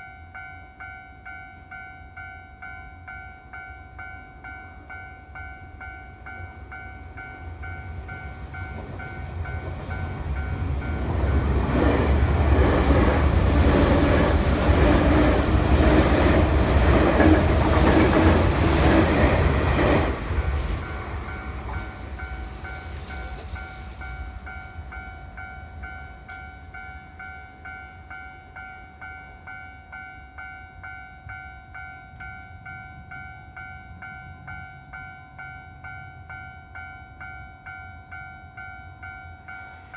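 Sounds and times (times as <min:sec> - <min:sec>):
train rumbling: 0:03.4 - 0:30.1.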